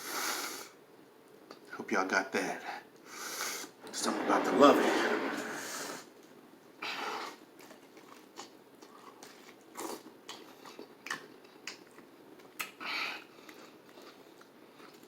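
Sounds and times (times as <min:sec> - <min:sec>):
crackles and mouth noises: 0:07.2 - 0:15.0.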